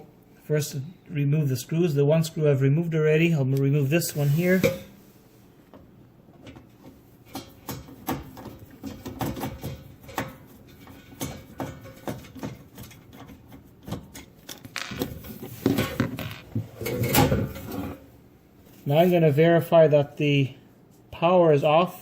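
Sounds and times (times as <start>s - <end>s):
panel rubbing and scraping: 4.0s - 5.0s, 14.8s - 18.2s.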